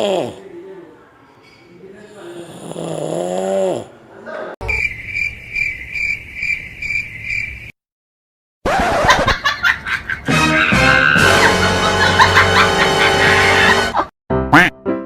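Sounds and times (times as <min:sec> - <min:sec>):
cartoon cricket chirping: 0:04.6 - 0:07.8
music: 0:10.3 - 0:15.0.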